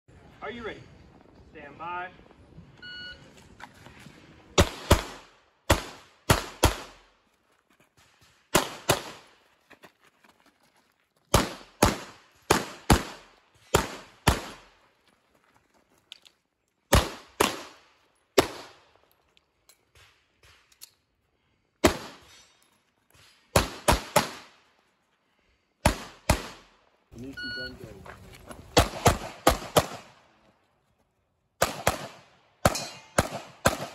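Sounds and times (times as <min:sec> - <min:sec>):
pistol gunshots: 0:04.6 - 0:07.1, 0:08.5 - 0:09.3, 0:11.3 - 0:14.8, 0:16.9 - 0:17.8, 0:18.4 - 0:18.8, 0:21.8 - 0:22.3, 0:23.5 - 0:24.6, 0:25.8 - 0:26.7, 0:28.7 - 0:30.2, 0:31.6 - 0:33.9.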